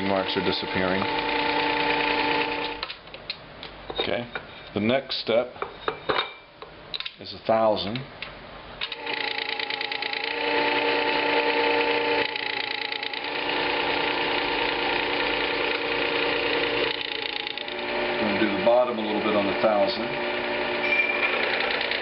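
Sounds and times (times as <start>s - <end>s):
disc sharpener motor hum: 0.0s - 2.8s, 8.9s - 22.0s
chisel grinding on spinning disc: 9.0s - 22.0s.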